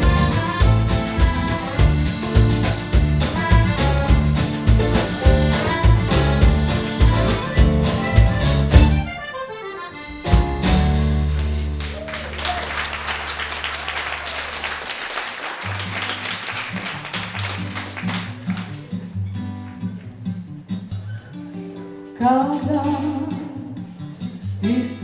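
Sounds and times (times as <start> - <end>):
bass line: 0.0 - 9.4, 10.2 - 12.1
rock band playing: 0.0 - 13.8
audience applause: 11.3 - 20.2.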